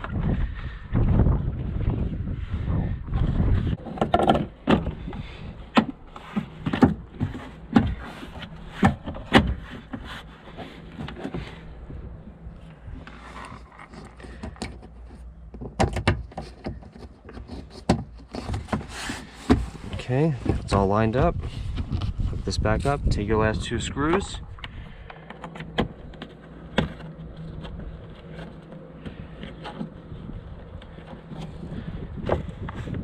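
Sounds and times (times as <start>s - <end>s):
plastic panel rubbing: 3.7s - 11.7s, 12.7s - 20.9s, 25.1s - 33.0s
plastic panel knocks and clicks: 15.6s - 16.8s.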